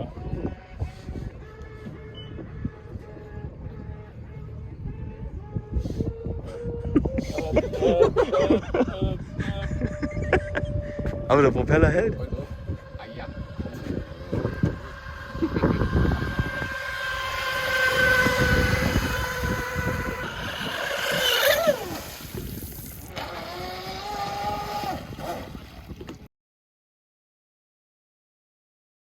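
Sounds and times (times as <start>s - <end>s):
boat motor whining: 0.0s - 7.5s, 8.7s - 26.3s
rushing water and wind: 11.0s - 26.3s.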